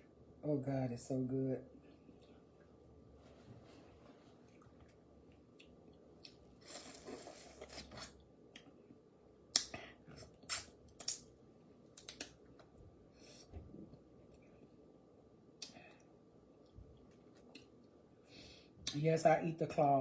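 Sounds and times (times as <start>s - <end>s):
chewing: 4.4s - 8.7s.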